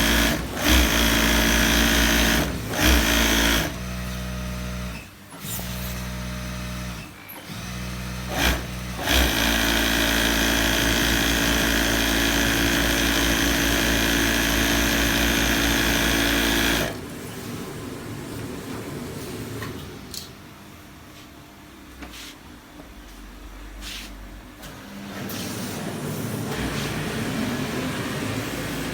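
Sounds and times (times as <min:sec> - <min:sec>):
sewing machine stitching: 0:00.0 - 0:17.1.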